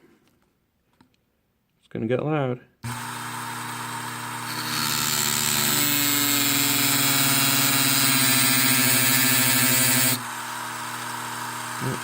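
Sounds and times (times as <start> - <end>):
rotary tool cutting metal: 2.9 - 12.0.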